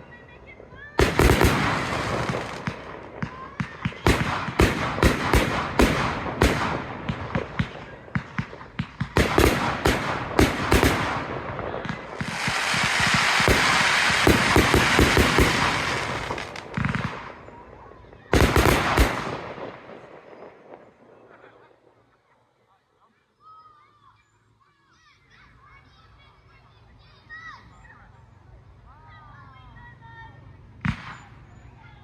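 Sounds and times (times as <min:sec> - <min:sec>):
firework shell bursts and bangs: 0:01.0 - 0:17.4
firework crackling hiss: 0:01.0 - 0:17.5.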